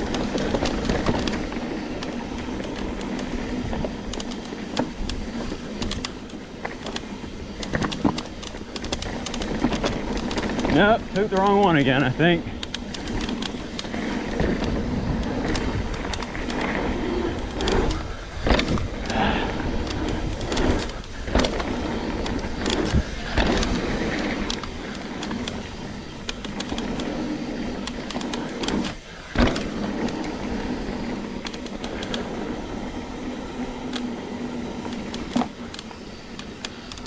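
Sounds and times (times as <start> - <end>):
bike knocking and rattling: 0.0 - 37.0
bike tyre rushing on dirt: 0.0 - 37.0.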